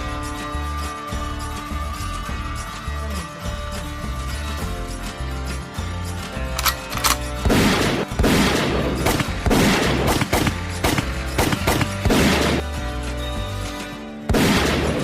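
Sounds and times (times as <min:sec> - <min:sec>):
background music: 0:00.0 - 0:15.0
gunshots with echo: 0:06.6 - 0:12.7, 0:14.3 - 0:15.0.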